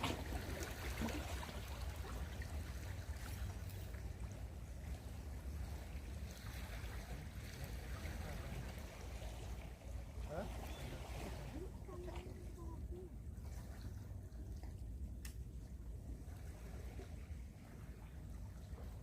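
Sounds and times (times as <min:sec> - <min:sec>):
low steady rumble: 0:00.0 - 0:19.0
water lapping and trickling: 0:00.0 - 0:19.0
faint clicks: 0:15.2 - 0:15.4.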